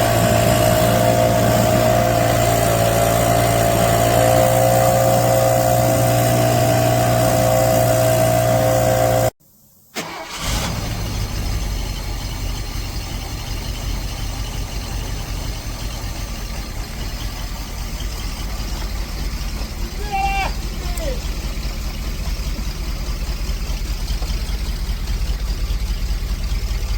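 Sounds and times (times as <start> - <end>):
low rough engine running: 0.0 - 9.3, 10.7 - 26.9
motor humming: 0.0 - 9.3.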